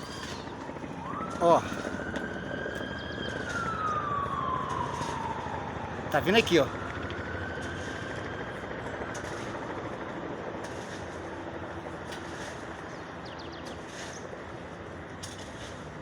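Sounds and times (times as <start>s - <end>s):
helicopter rotor and engine: 0.0s - 16.0s.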